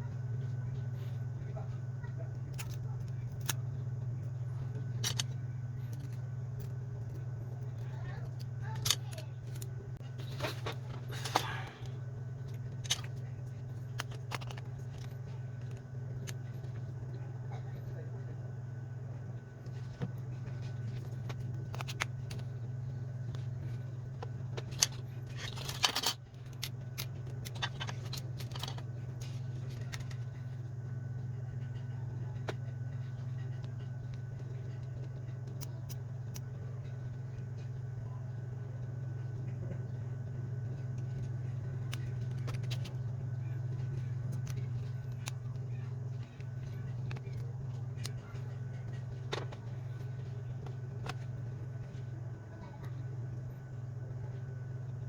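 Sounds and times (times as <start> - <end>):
steady low hum: 0.0 - 55.0
small clicks and taps of parts: 5.0 - 9.7, 13.8 - 16.9.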